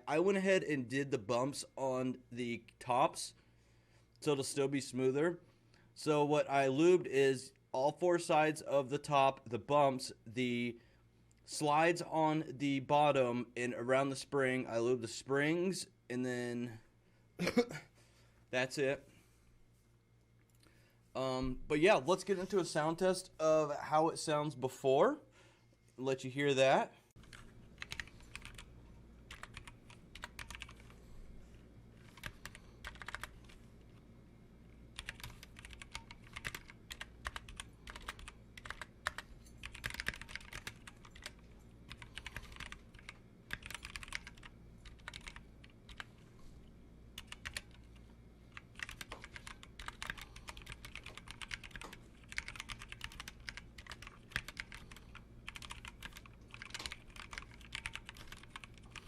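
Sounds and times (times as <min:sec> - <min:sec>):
faint low hum: 0:00.0 - 0:59.0
mechanical keyboard typing: 0:27.2 - 0:28.7, 0:29.3 - 0:31.0, 0:32.0 - 0:33.6, 0:35.0 - 0:46.1, 0:47.2 - 0:47.9, 0:48.5 - 0:59.0.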